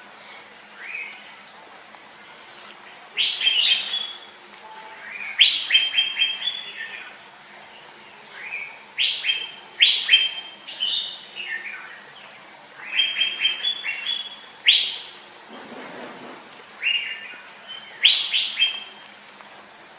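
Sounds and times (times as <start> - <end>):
bird singing whistled notes: 3.2 - 7.2, 8.3 - 12.0, 12.8 - 15.2, 16.8 - 19.1.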